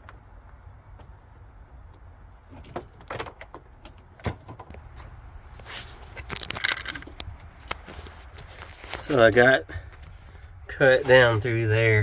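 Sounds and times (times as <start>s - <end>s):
scraping and rustling: 2.4s - 12.0s.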